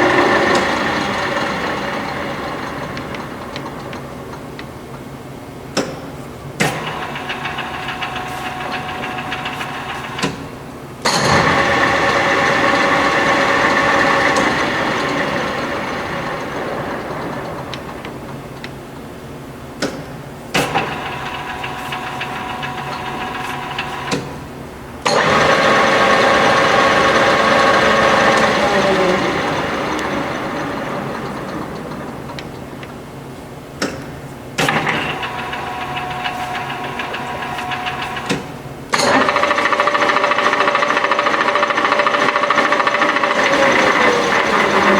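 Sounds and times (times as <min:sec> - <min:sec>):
lathe gearing whining: 0:00.0 - 0:44.9.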